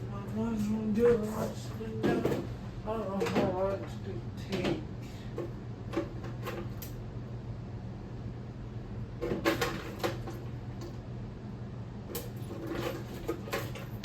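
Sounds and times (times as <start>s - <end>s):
steady low hum: 0.0s - 14.0s
clattering knocks of objects: 2.0s - 2.5s.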